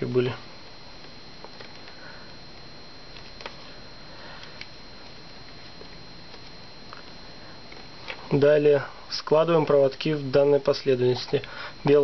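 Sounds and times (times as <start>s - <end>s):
wires clicking and rustling: 1.0s - 8.4s.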